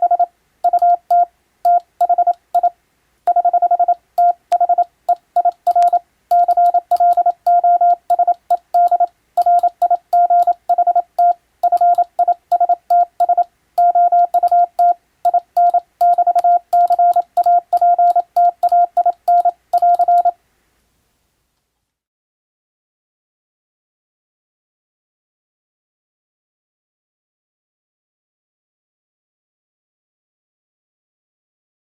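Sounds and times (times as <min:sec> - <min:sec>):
morse code tone beeping: 0:00.0 - 0:02.7, 0:03.3 - 0:20.4.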